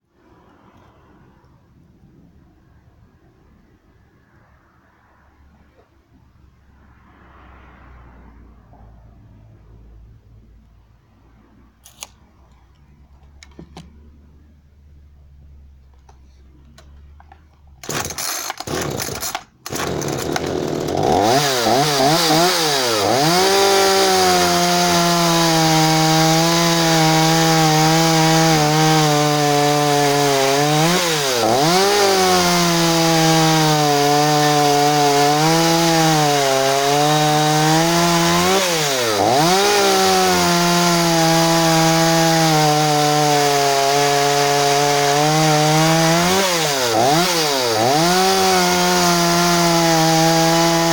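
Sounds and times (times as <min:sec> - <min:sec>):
chainsaw starting and revving: 0:17.8 - 0:50.9.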